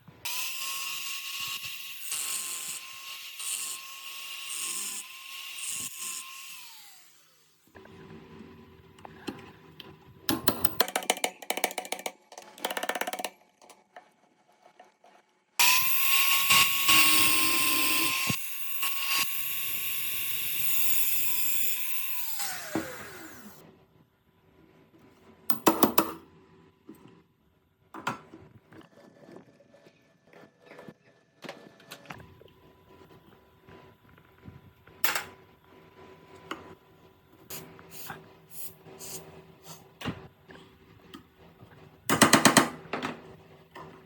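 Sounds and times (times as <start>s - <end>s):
power tool whining and grinding: 15.6s - 23.6s.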